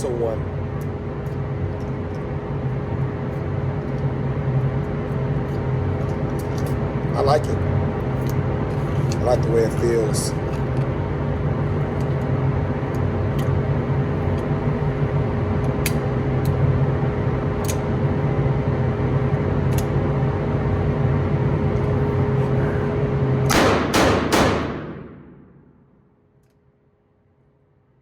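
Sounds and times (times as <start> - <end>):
steady mechanical hum: 0.0 - 28.0
distant gunshots: 23.5 - 25.5
loud bursts: 23.5 - 25.8.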